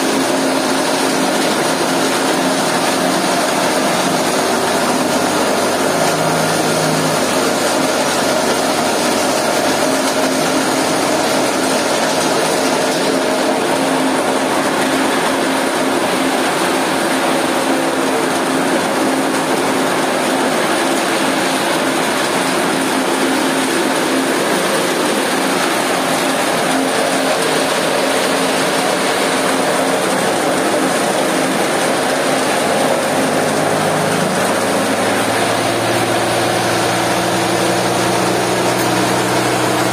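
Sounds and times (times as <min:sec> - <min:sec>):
constant motor hum: 0:00.0 - 0:39.9.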